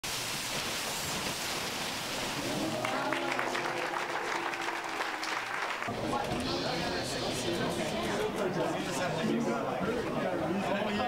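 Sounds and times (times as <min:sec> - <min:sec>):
crowd applauding: 0:02.2 - 0:08.4
voices calling out: 0:02.4 - 0:08.4.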